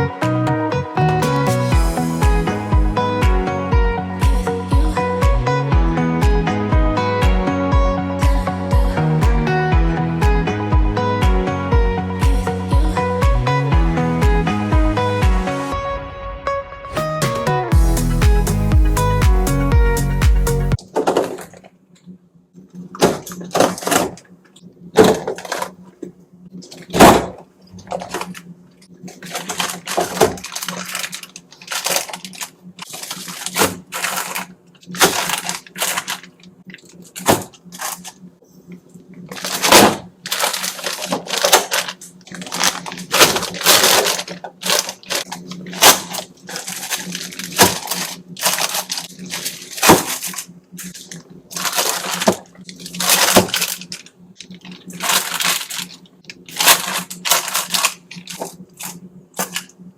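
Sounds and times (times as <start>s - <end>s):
faint steady hum: 20.8s - 59.9s.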